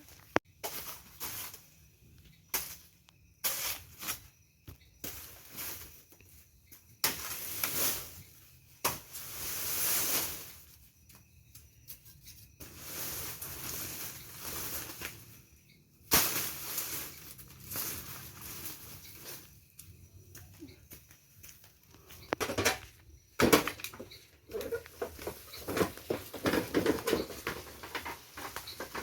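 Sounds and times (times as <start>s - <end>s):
dry branches rustling: 12.6s - 19.9s.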